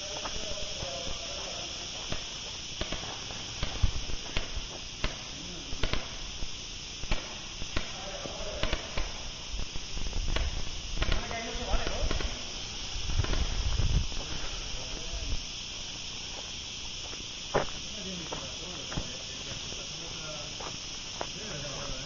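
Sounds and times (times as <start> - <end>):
airsoft guns firing: 2.0 - 13.7.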